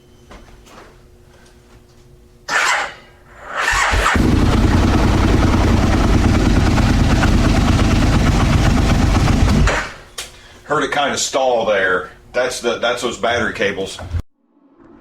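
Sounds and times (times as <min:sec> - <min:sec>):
motorcycle starter cranking: 0:03.6 - 0:04.8
motorcycle engine running: 0:03.7 - 0:09.8.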